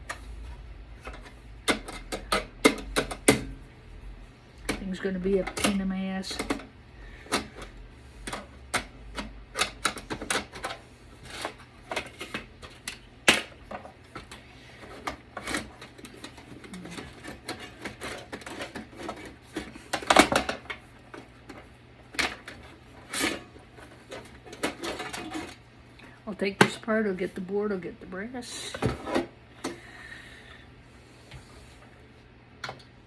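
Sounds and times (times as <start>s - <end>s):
computer parts clicking and knocking: 1.1s - 3.6s
clatter of computer parts: 4.7s - 25.6s.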